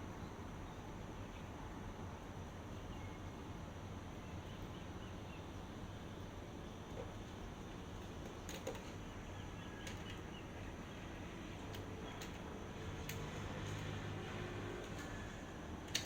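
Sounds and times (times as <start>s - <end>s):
low outdoor background noise: 0.0s - 16.0s
distant bird chirps: 2.7s - 3.5s, 8.3s - 15.7s.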